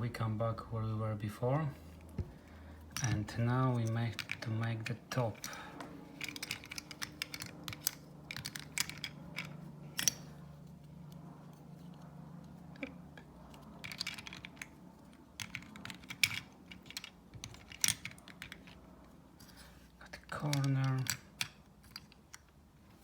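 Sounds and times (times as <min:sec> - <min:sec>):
steady low hum: 0:00.0 - 0:23.0
plastic puzzle pieces clicking: 0:06.2 - 0:10.2, 0:15.4 - 0:18.8, 0:20.2 - 0:22.5.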